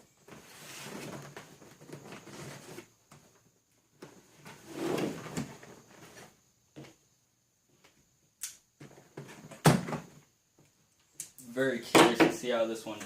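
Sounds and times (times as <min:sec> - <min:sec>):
sharp click: 0:08.4 - 0:08.6.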